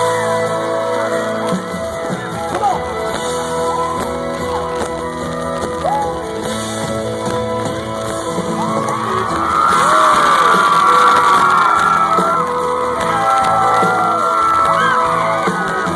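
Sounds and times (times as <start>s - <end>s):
live country band: 0.0s - 15.9s
crowd whooping and yelling: 2.0s - 6.6s, 7.7s - 15.9s.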